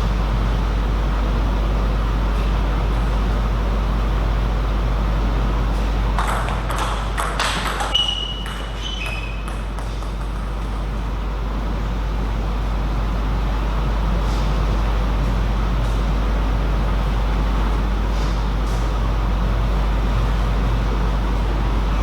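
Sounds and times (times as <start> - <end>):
background hum of a hall: 0.0 - 22.0
table tennis ball clicks: 6.2 - 10.7
high squeaks: 7.8 - 9.6.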